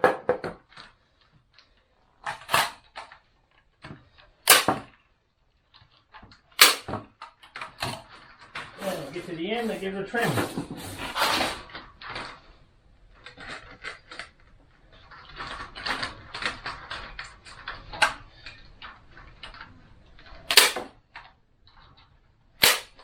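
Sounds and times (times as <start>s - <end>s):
staple gun snap: 4.5s - 4.8s, 6.6s - 6.9s, 20.5s - 20.9s, 22.6s - 23.0s.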